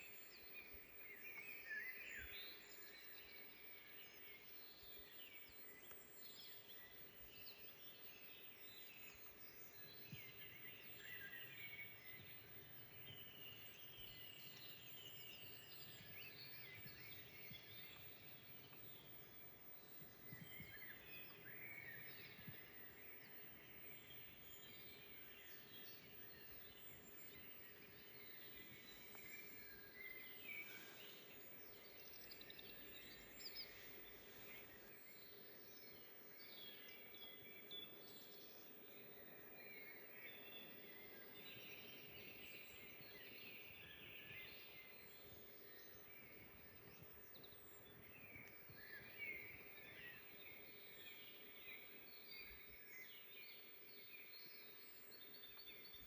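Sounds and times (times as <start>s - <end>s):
low background hiss: 0.0s - 56.0s
birds chirping and trilling: 19.8s - 54.7s.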